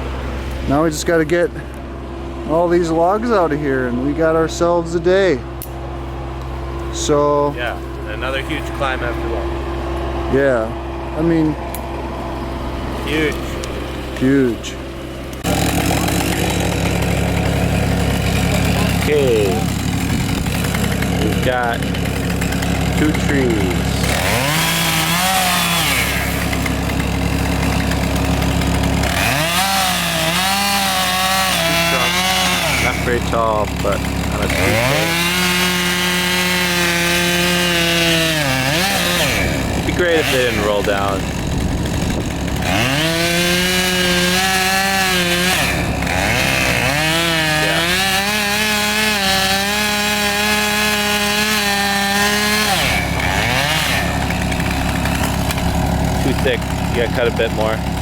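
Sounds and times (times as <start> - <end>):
chainsaw engine revving: 0.0 - 58.0.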